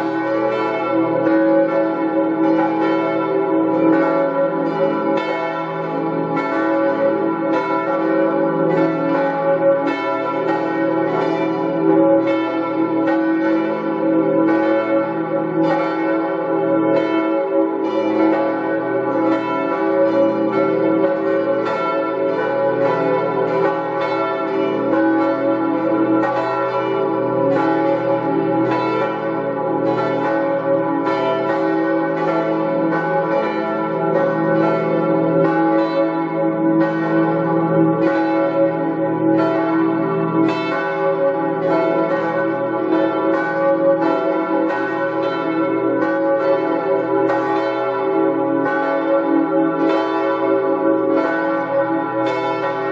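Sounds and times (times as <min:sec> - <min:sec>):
church bells ringing: 0:00.0 - 0:52.9.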